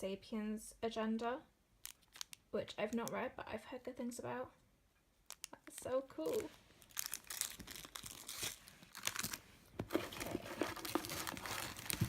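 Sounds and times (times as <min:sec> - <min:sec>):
packaging crinkling and rustling: 0:01.8 - 0:02.4, 0:05.3 - 0:12.0.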